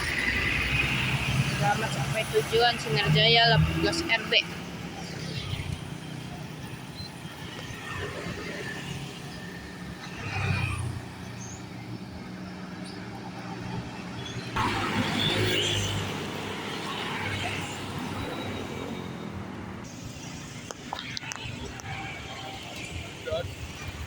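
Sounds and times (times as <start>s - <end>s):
bus pulling out: 0.0s - 23.2s.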